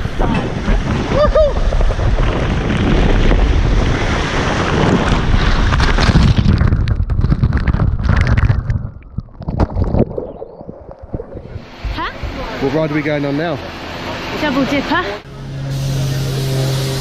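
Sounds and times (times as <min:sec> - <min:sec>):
wind buffeting microphone: 0:00.0 - 0:12.9
water splashes: 0:00.0 - 0:14.1.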